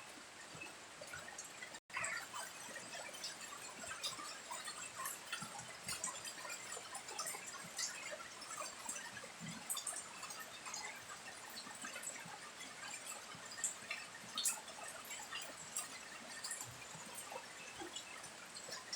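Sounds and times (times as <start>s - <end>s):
water dripping: 0.1s - 18.9s.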